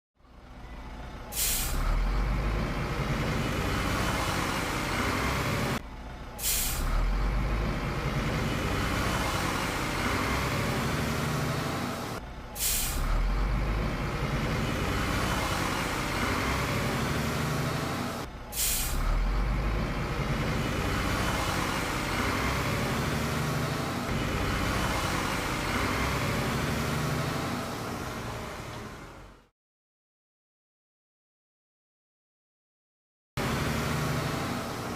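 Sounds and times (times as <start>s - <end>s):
short loud hiss: 12.6s - 13.0s.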